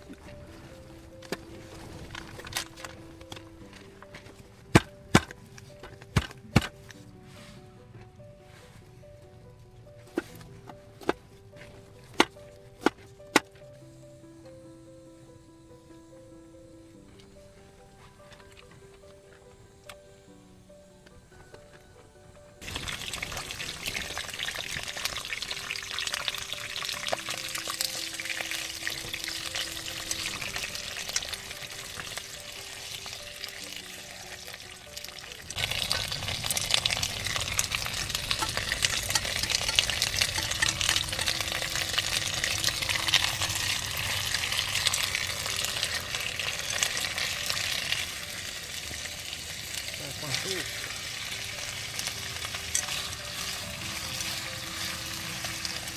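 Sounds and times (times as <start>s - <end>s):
food sizzling in a pan: 22.6s - 55.9s
stirring in a pan: 35.6s - 43.3s.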